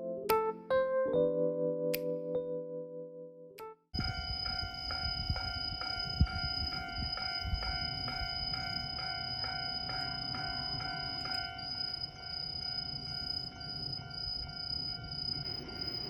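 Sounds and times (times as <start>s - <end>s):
railroad crossing bell ringing: 4.0s - 16.0s.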